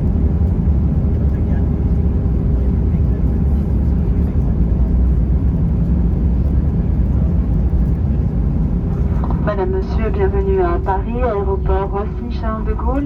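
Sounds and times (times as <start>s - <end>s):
aircraft cabin rumble: 0.0s - 13.0s
faint steady hum: 8.9s - 13.0s.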